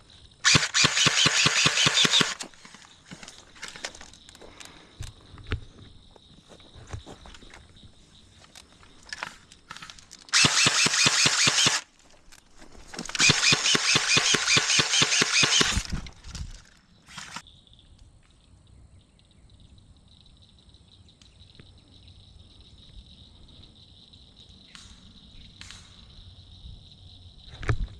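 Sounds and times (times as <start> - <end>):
cricket trill: 0.0 - 27.9
airsoft gun full-auto bursts: 0.4 - 2.4, 10.3 - 11.9, 13.1 - 15.9.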